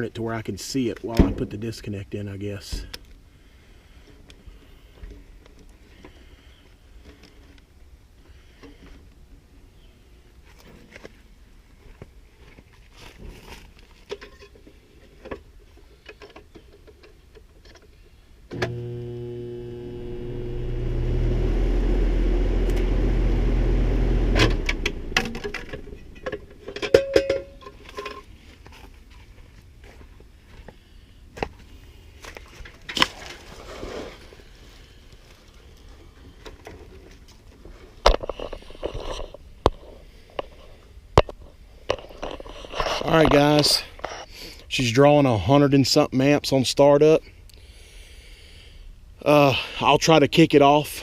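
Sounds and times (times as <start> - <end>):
compressor locked-rotor hum: 18.5 - 27.4
clicks and knocks: 24.4 - 28.2.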